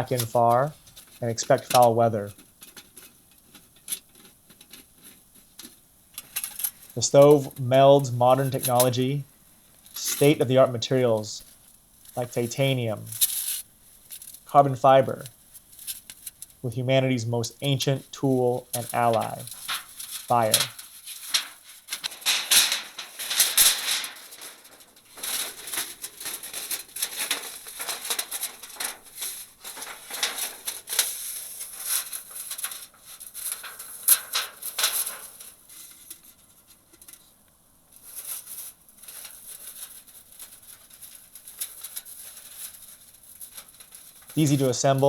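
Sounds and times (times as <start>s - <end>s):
metal panels clicking and rattling: 21.4s - 31.1s.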